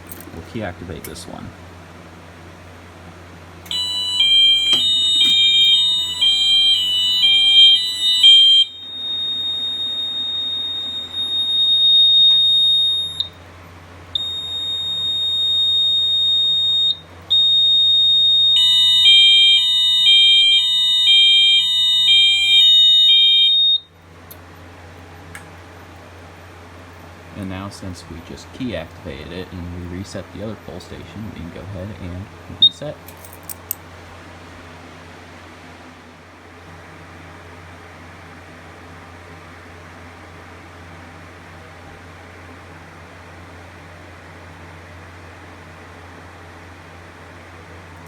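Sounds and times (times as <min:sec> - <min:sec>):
fire alarm high-low tone: 0:03.7 - 0:13.4, 0:14.1 - 0:24.0
steady high-pitched alarm tone: 0:03.7 - 0:24.0.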